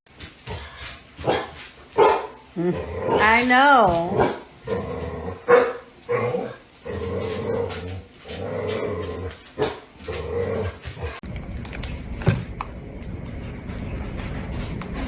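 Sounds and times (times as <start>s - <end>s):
pet growling: 2.6s - 11.2s.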